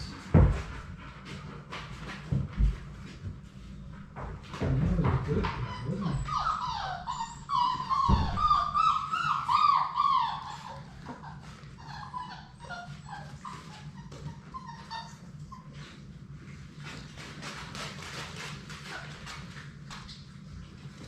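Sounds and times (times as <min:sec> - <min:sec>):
puppies whining and whimpering: 0:04.6 - 0:16.3
low thump: 0:08.1 - 0:08.7.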